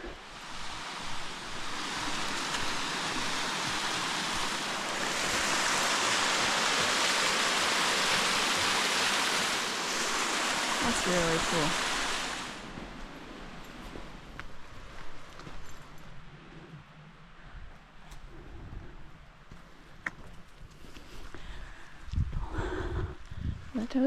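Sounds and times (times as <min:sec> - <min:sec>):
stream rushing over rocks: 0:00.0 - 0:14.0.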